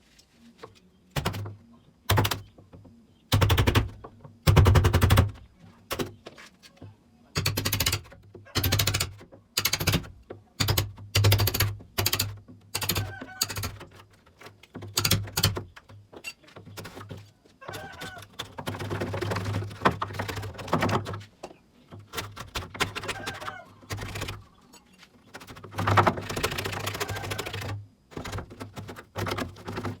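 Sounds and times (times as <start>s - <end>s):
power tool rattling on wood: 7.4s - 17.2s, 25.3s - 30.0s.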